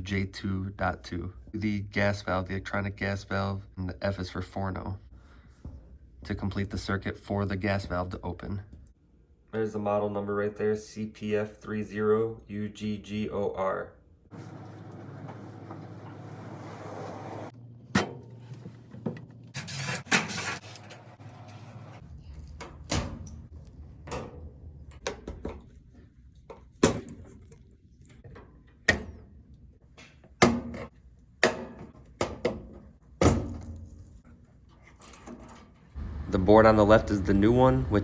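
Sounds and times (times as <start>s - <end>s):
rustling scrape: 14.3s - 17.6s, 19.5s - 22.1s.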